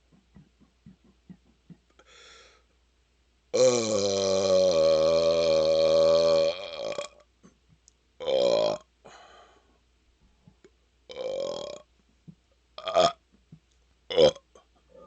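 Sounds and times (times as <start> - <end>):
man burping: 3.6 - 7.2, 8.2 - 8.8, 11.1 - 11.8, 12.8 - 13.2, 14.1 - 14.6.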